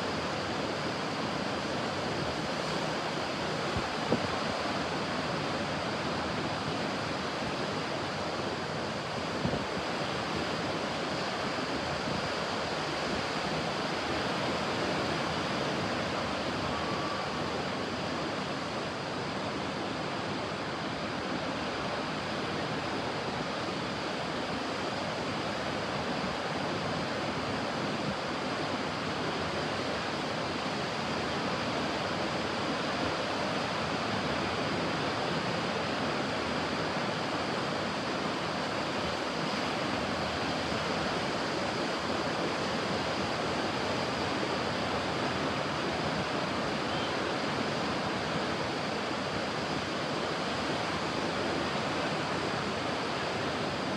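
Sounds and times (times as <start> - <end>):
ocean surf washing: 0.0 - 53.9.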